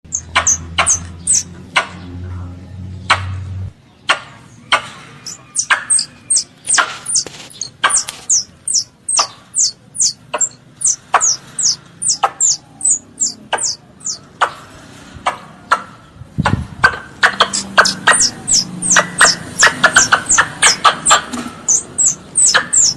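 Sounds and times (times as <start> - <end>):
young squirrel high chirps: 0.1 - 1.5, 5.2 - 14.2, 17.2 - 22.9.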